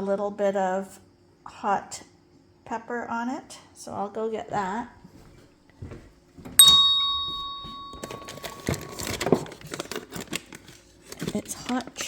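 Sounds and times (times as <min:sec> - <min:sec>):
rustling and light clattering: 0:04.5 - 0:12.0
bright bell-like ring: 0:06.6 - 0:09.2.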